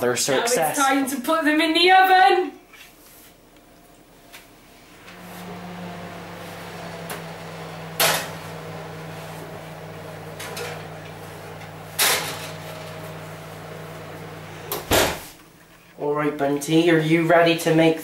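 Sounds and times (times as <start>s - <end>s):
oven fan humming: 3.0s - 17.9s
oven door and trays clunking: 6.6s - 15.3s.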